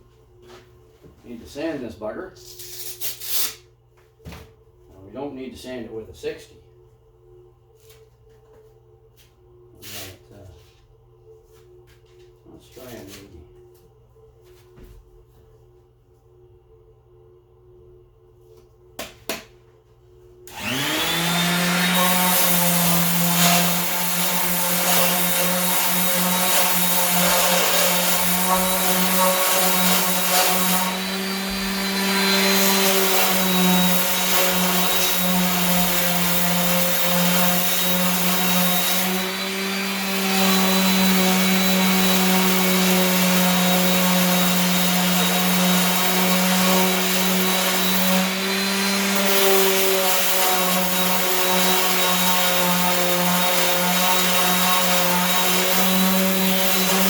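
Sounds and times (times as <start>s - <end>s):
power sander sanding: 20.5s - 57.0s.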